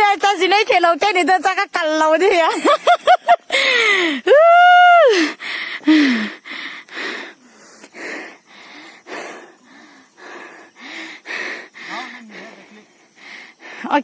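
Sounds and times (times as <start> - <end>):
person panting hard: 3.5 - 4.3, 5.1 - 13.9.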